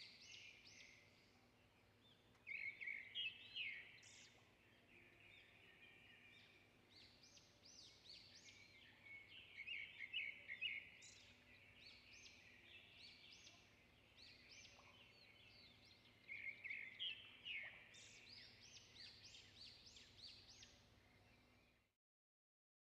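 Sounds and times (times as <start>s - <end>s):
small birds chirping: 0.0s - 21.9s.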